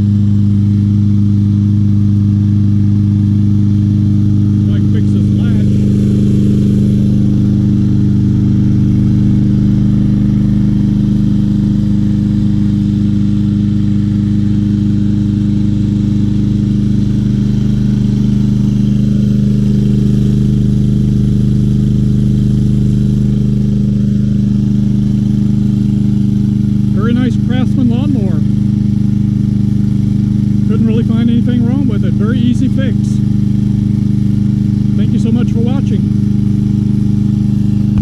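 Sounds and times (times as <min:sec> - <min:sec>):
lawn mower engine running: 0:00.0 - 0:38.0.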